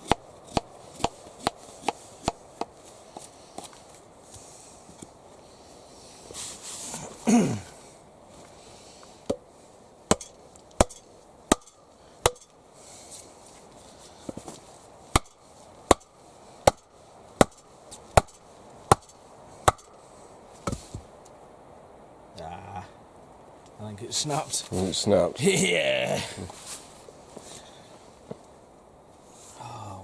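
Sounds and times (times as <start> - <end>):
hand tool striking wood: 0.0 - 3.3, 10.1 - 12.6, 15.1 - 20.0.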